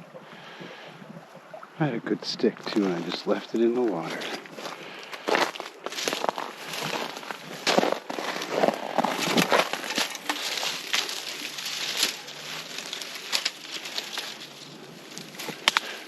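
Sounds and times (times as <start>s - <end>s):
footsteps crunching snow: 2.6s - 16.0s
sharp cracks: 15.2s - 16.0s.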